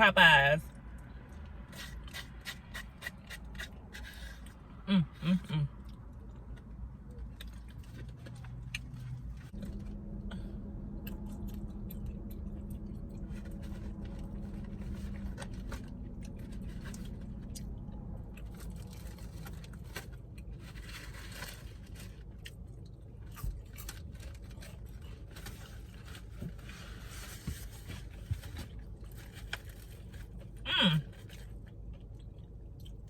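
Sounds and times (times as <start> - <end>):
person chewing and crunching food: 0.9 - 27.4, 28.0 - 33.0
low hum: 3.7 - 26.0.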